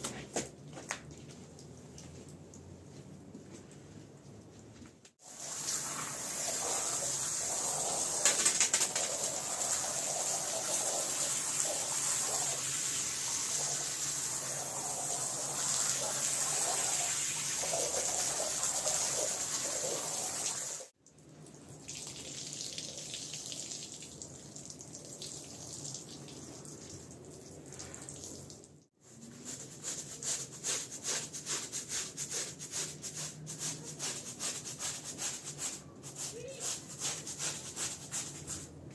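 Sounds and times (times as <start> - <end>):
brush scrubbing wet rug: 29.1 - 38.7.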